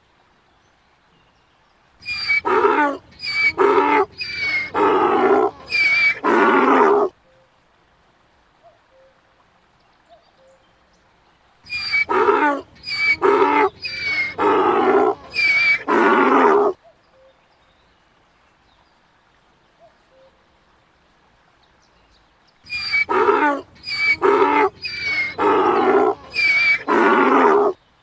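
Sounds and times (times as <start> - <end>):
donkey braying: 2.0 - 7.1, 11.7 - 16.8, 22.7 - 27.8.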